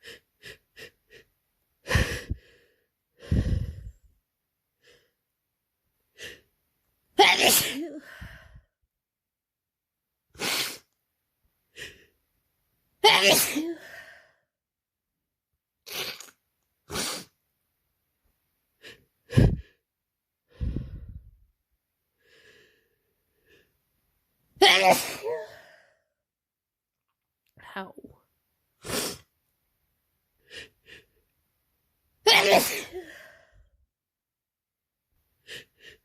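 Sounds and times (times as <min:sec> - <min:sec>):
person sneezing: 0:07.2 - 0:08.2, 0:13.0 - 0:13.9, 0:15.9 - 0:17.4, 0:24.6 - 0:25.6, 0:32.3 - 0:33.2.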